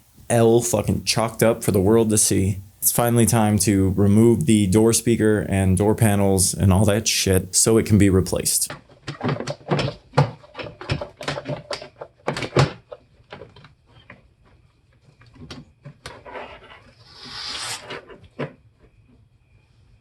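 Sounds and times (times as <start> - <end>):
brief scraping rush: 17.0 - 18.1.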